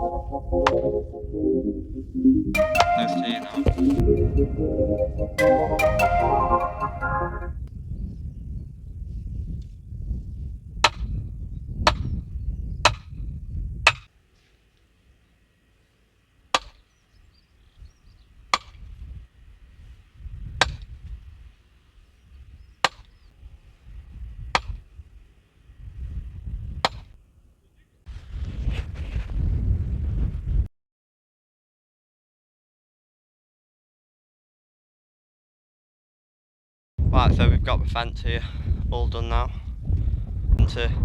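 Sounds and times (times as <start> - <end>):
sledgehammer striking fence post: 16.5 - 16.8.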